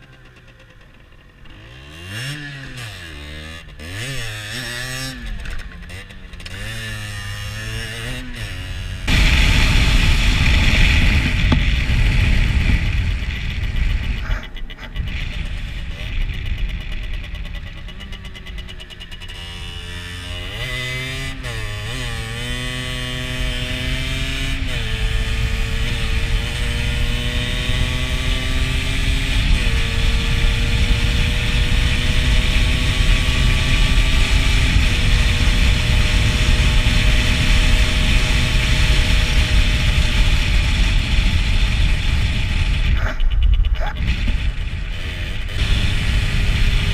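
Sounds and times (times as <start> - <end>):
motorcycle engine accelerating: 0.0 - 46.9
wind rumble on microphone: 8.7 - 18.4, 21.2 - 46.9.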